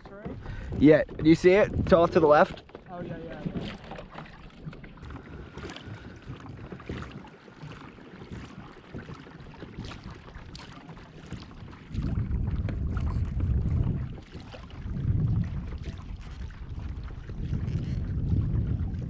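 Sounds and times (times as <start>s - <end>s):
water noise: 0.0s - 19.0s
wind buffeting microphone: 0.0s - 19.0s.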